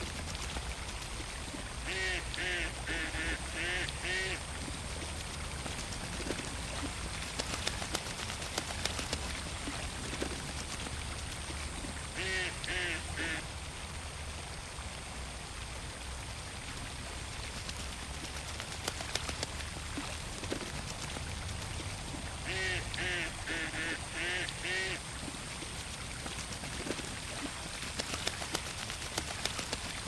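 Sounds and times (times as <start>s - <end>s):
water splashes and drips: 0.0s - 30.0s
duck quacking: 1.9s - 4.4s, 12.2s - 13.4s, 22.5s - 25.0s.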